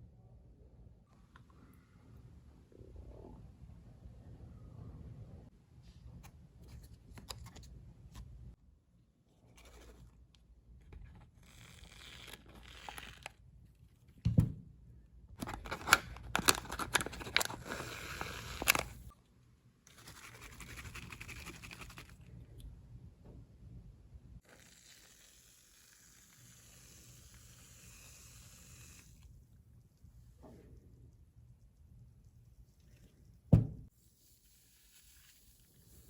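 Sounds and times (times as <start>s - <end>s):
low thud: 33.5s - 33.9s.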